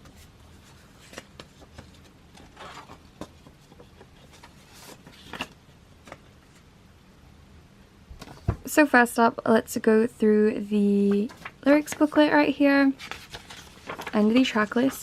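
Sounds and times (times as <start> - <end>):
paper and plastic rustling: 0.0 - 6.6, 10.9 - 15.0.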